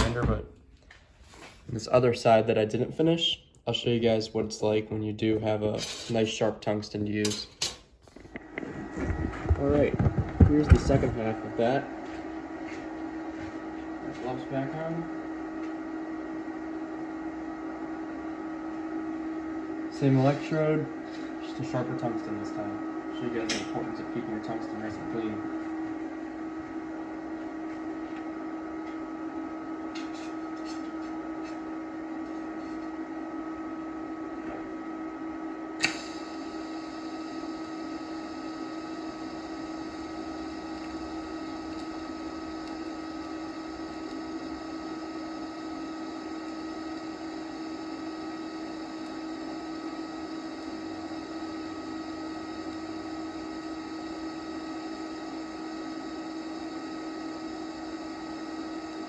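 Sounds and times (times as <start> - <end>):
welder machine hum: 0.0 - 59.0
welding arc start crack: 35.8 - 36.4
welding arc hissing: 35.8 - 59.0.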